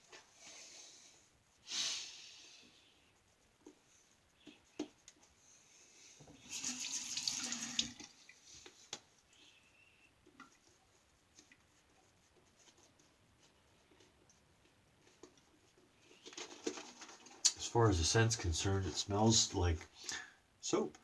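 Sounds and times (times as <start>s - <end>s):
faint clicks and taps: 3.6s - 5.4s, 8.6s - 9.4s, 10.2s - 17.6s
tap water splashing into basin: 6.6s - 8.2s.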